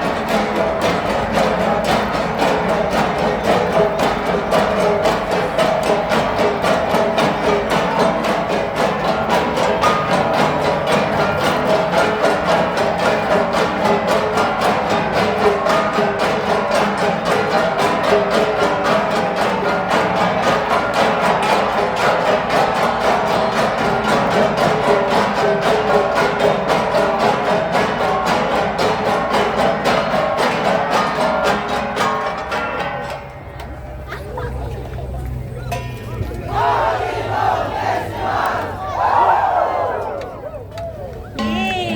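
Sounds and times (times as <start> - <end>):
flat gongs struck: 41.4 - 41.9.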